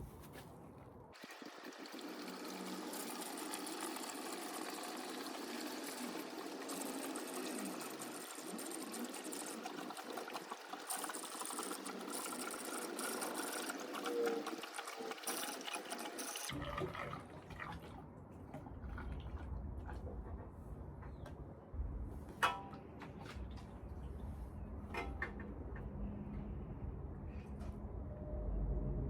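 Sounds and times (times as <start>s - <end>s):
diesel fuel pouring into tank: 1.2s - 19.8s.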